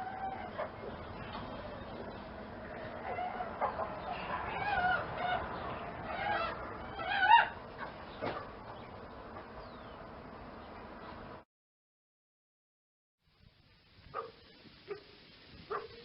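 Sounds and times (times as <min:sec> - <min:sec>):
animal calls with wavering pitch: 0:00.0 - 0:01.8, 0:02.7 - 0:07.6.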